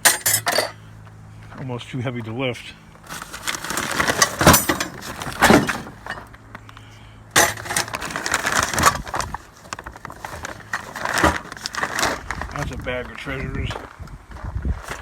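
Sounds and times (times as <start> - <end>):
scrap metal clattering into bin: 0.0 - 0.8, 3.1 - 6.3, 7.4 - 9.2
metal crashes: 3.6 - 6.3, 7.4 - 9.0.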